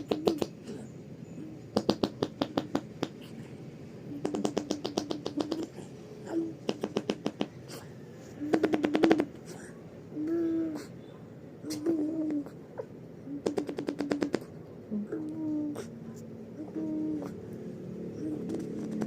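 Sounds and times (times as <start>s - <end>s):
baby making sputtering mouth sounds: 4.1s - 10.9s, 11.6s - 16.0s, 16.6s - 17.4s, 18.2s - 19.0s.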